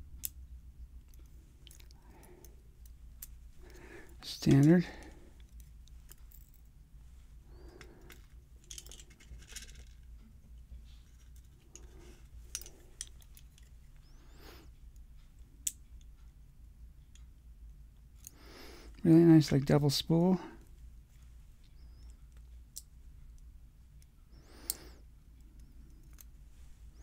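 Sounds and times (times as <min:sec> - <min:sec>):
small metallic clicks and scrapes: 0:07.6 - 0:16.2, 0:21.1 - 0:27.0.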